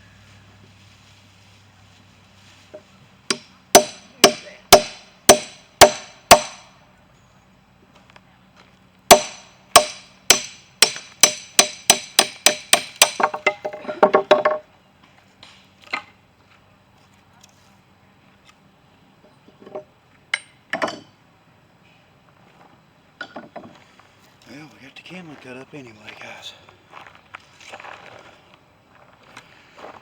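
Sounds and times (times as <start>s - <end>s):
blade chopping kindling: 9.1s - 13.9s.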